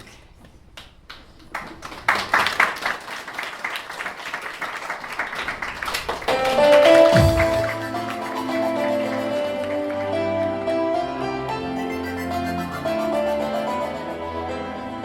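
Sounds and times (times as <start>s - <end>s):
audience clapping: 0.8s - 10.6s
recorded music: 6.3s - 15.0s.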